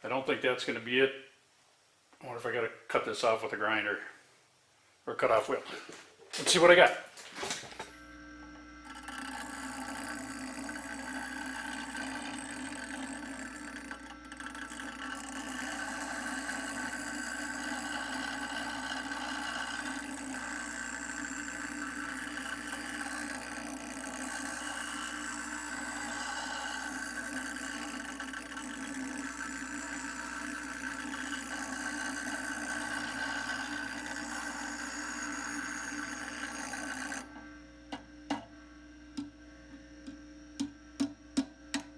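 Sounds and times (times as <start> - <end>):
electric grinder grinding steel: 8.6 - 37.5.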